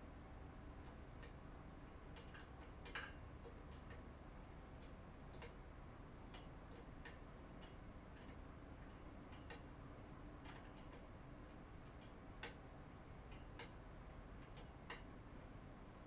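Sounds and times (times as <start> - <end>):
light clicks: 2.0 - 5.6, 6.3 - 9.7, 10.4 - 12.6, 13.2 - 15.5.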